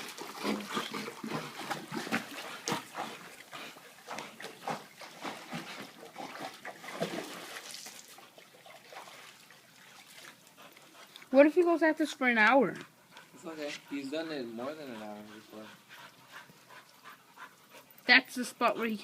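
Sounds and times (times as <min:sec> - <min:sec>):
dog splashing in water: 0:00.0 - 0:11.3.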